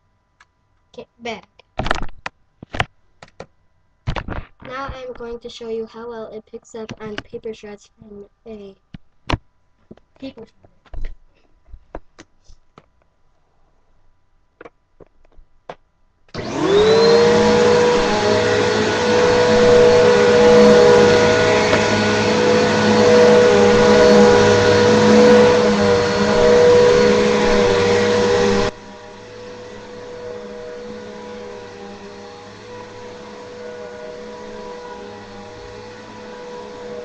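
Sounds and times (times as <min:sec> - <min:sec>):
vacuum cleaner motor whining: 0:16.3 - 0:37.0.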